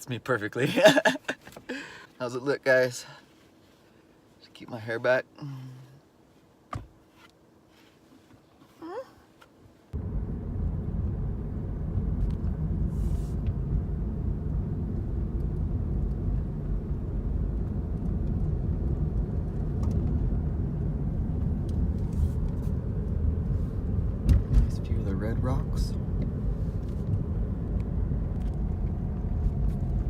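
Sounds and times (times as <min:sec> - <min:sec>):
car road rumble: 0:09.9 - 0:30.0.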